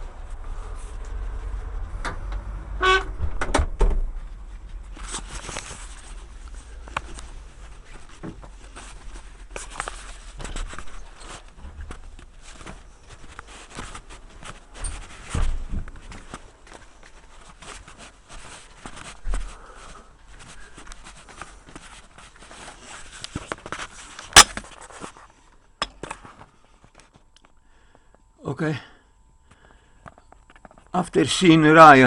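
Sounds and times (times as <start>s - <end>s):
footsteps: 4.0s - 23.9s.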